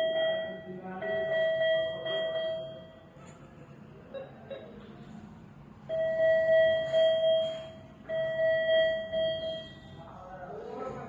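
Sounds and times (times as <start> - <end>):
medical monitor alarm tones: 0.0 - 3.1, 5.8 - 10.0.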